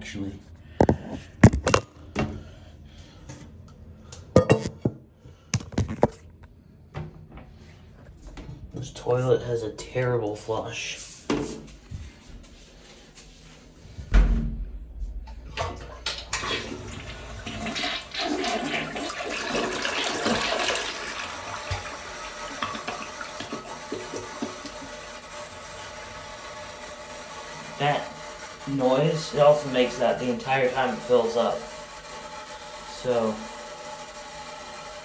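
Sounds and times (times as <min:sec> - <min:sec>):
low thump: 0:14.0 - 0:15.6
toilet flushing: 0:15.2 - 0:35.0
toilet tank refilling hiss: 0:15.6 - 0:35.0.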